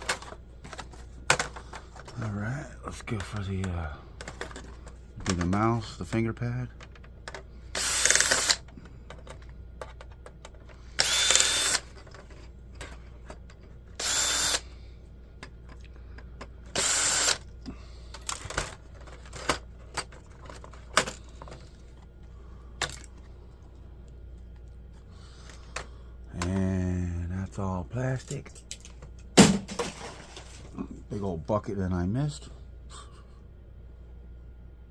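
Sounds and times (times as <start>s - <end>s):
screws and plastic clicking: 6.8s - 11.9s, 14.0s - 14.6s, 16.7s - 17.4s
electric screwdriver running: 7.7s - 8.7s, 11.0s - 11.9s, 14.0s - 14.6s, 16.7s - 17.4s.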